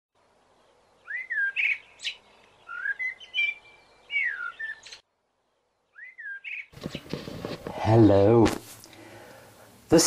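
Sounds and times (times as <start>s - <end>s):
songbird singing: 0.2s - 7.5s.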